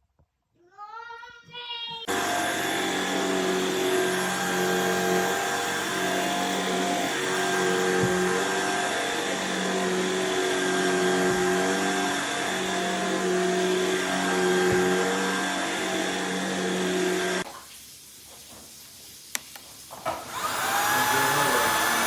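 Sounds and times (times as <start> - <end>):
stick vacuum running: 2.1 - 17.5, 20.1 - 22.0.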